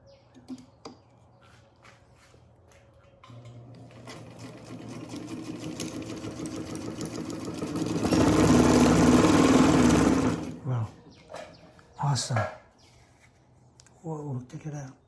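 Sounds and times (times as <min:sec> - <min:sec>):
sewing machine clattering: 0:03.8 - 0:10.6.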